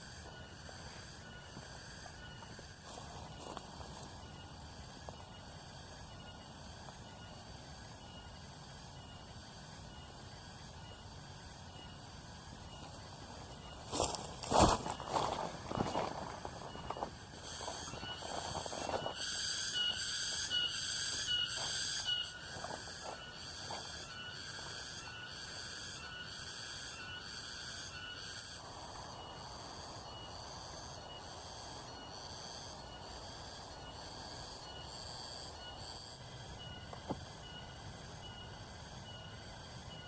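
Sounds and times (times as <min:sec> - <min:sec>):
cicadas pulsing chorus: 0:00.0 - 0:40.0
footsteps: 0:13.9 - 0:19.2
steady hiss: 0:15.4 - 0:39.9.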